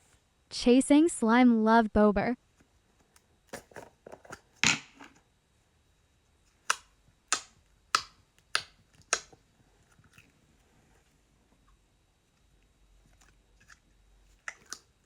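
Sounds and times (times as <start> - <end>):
slime squishing with clicking pops: 6.6 - 9.4, 14.4 - 15.0.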